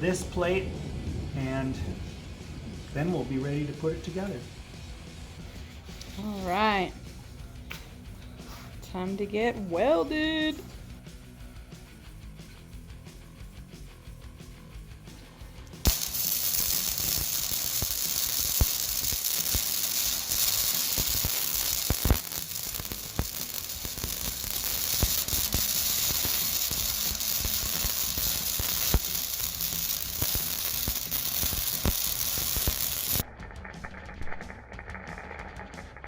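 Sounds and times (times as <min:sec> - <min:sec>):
welding arc sizzling and popping: 0:15.6 - 0:33.2.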